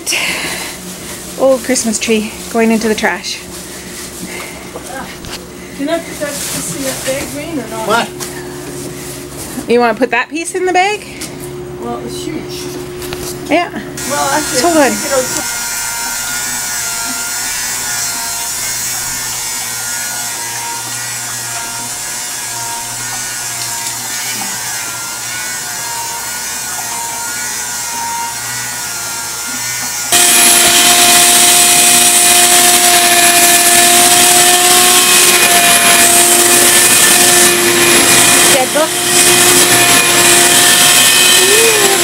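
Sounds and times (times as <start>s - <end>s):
machine motor hum: 11.0s - 42.0s.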